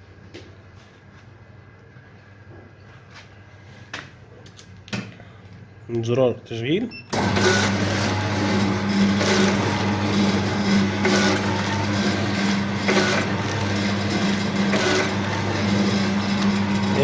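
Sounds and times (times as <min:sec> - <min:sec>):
packing machine electric hum: 0:07.0 - 0:17.0
packing machine noise bursts: 0:07.1 - 0:17.0.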